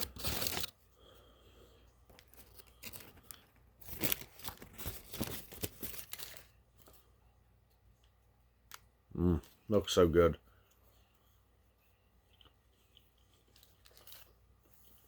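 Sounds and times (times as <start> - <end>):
paper wrapper crinkling and tearing: 0.0 - 0.7, 2.1 - 7.0, 13.3 - 15.0.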